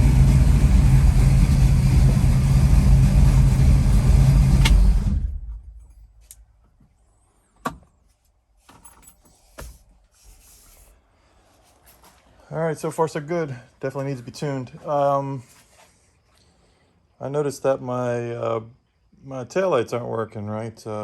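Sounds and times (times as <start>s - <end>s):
car engine running: 0.0s - 5.8s
sharp click: 4.6s - 4.8s.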